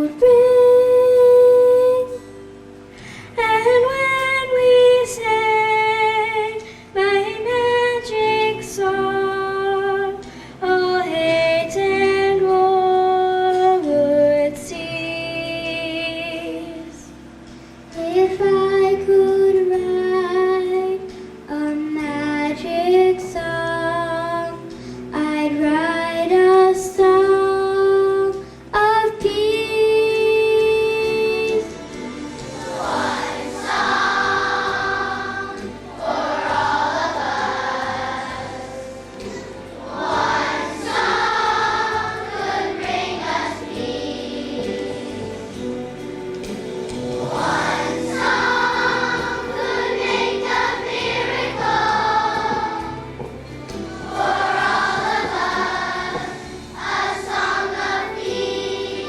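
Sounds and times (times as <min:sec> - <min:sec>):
held accompaniment notes: 0:00.0 - 0:59.0
children's choir singing: 0:25.5 - 0:59.0.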